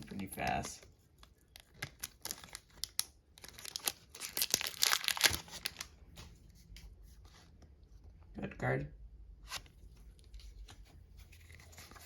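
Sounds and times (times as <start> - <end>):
foil wrapper crinkling: 1.2 - 5.9.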